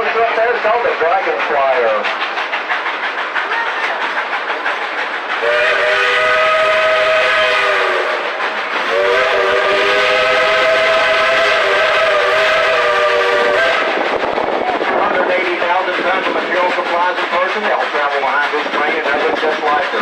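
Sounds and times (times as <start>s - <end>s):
train rumbling: 0.0s - 20.0s
steam locomotive whistle: 5.4s - 14.0s.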